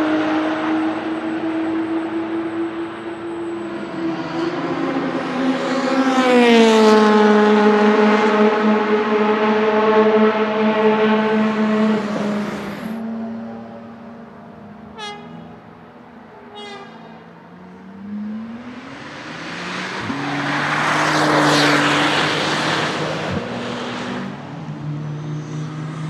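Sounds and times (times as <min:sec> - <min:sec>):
car engine passing by: 0:03.8 - 0:13.5, 0:16.3 - 0:26.0.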